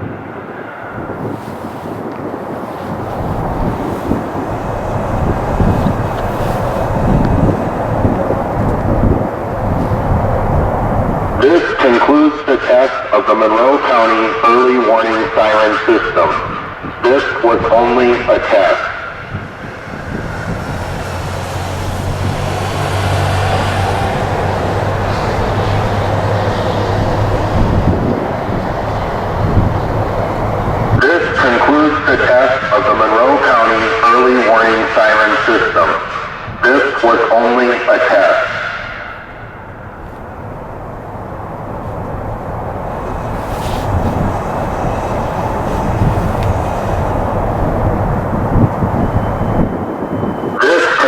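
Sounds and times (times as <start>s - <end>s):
broad rumbling noise: 0.0s - 51.0s
vehicle engine hum: 0.8s - 11.5s, 17.9s - 31.0s, 38.9s - 50.6s.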